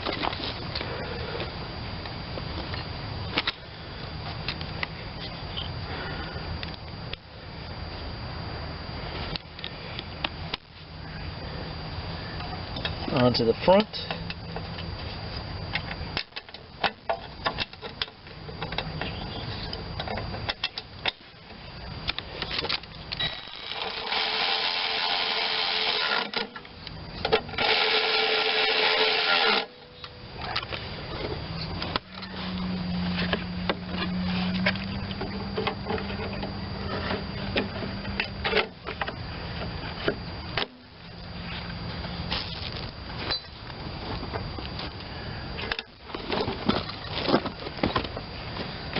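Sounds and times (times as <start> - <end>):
steady low hum: 0.0 - 48.9
power tool running: 23.2 - 30.1
tools and metal parts clinking: 43.3 - 43.6.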